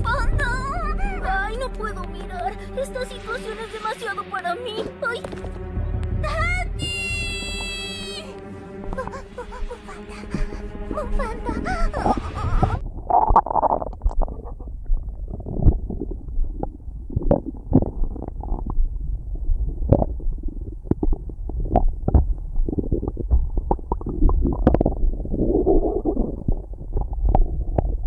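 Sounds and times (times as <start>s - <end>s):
low thuds: 5.2s - 28.0s
stomach gurgling and rumbling: 8.9s - 28.0s.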